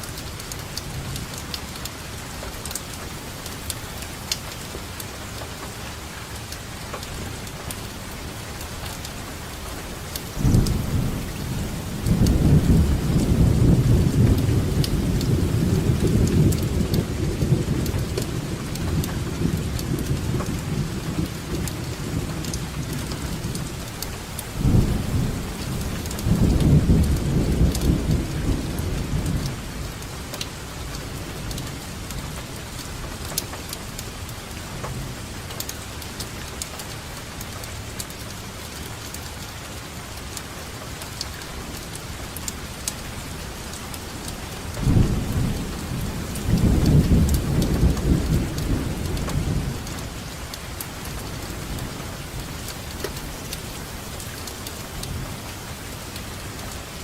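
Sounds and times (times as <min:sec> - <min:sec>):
steady rain falling: 0:00.0 - 0:57.0
rolling thunder: 0:10.4 - 0:22.2, 0:44.8 - 0:50.3.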